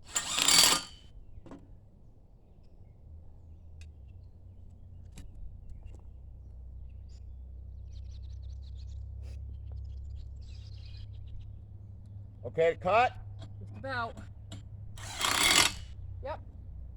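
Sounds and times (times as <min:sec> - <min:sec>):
birds chirping: 0:05.6 - 0:11.8.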